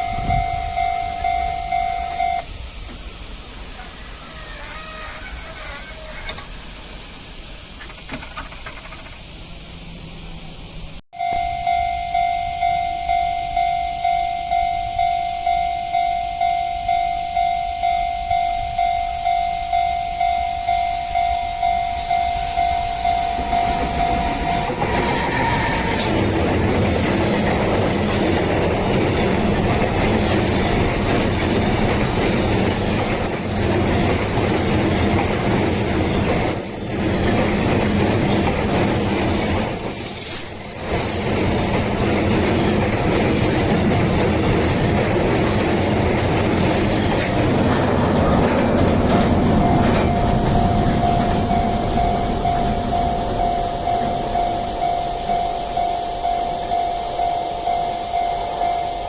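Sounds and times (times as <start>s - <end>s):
level crossing warning bell: 0.0s - 2.6s, 11.2s - 37.5s, 43.0s - 59.0s
train wheels clattering over rails: 7.8s - 9.3s, 23.0s - 54.6s.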